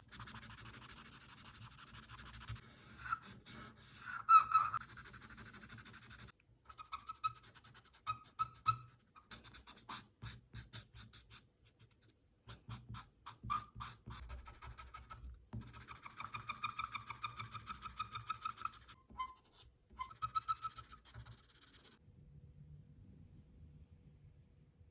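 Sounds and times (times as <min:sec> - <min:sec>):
drawing tool scratching on paper: 0:00.0 - 0:22.0.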